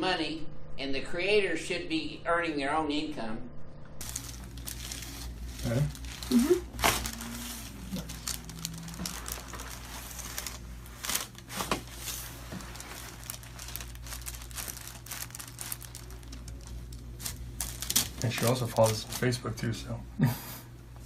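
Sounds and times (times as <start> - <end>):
low steady hum: 0.0 - 21.0
paper crinkling and rustling: 4.0 - 19.5.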